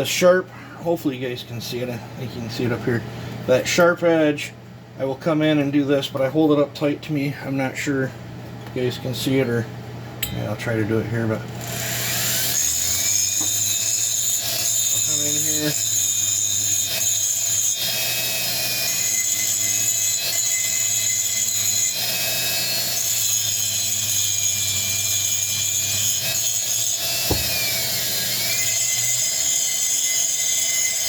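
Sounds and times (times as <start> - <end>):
rotary tool grinding whine: 11.6 - 20.4, 21.4 - 31.0.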